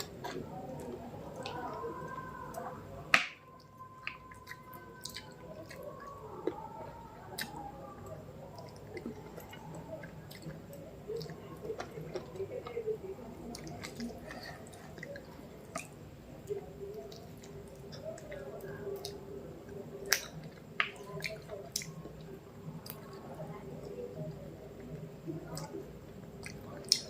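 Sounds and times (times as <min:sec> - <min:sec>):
close chewing: 0:03.6 - 0:24.1.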